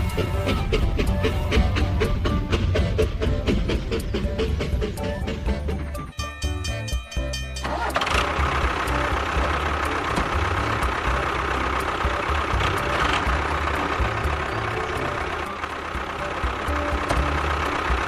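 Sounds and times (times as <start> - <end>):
engine idling with whine: 7.5 - 18.0.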